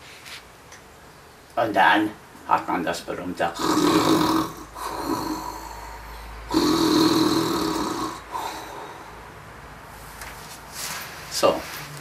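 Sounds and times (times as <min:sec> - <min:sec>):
man imitating snoring: 0:03.4 - 0:09.2
soft breath: 0:04.7 - 0:06.5, 0:08.1 - 0:11.3.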